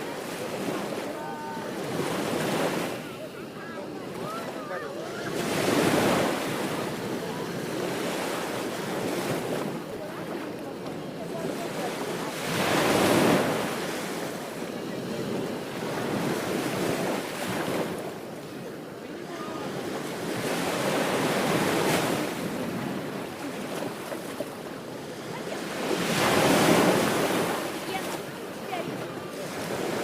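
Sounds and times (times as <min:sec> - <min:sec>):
ocean waves breaking: 0:00.0 - 0:30.0.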